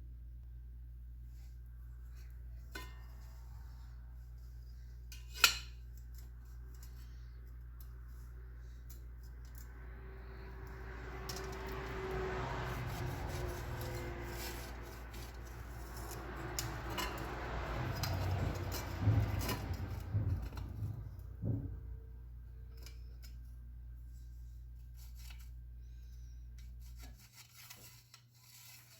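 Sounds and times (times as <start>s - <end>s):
steady low hum: 0.0s - 26.9s
metal scraping with light clanks: 1.3s - 28.9s
sharp metal knocks: 10.8s - 22.1s.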